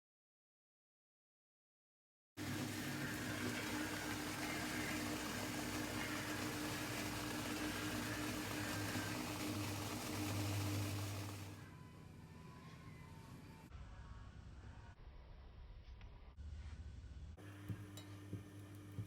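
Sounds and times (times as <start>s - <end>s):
small motor humming with hiss: 2.4s - 11.6s.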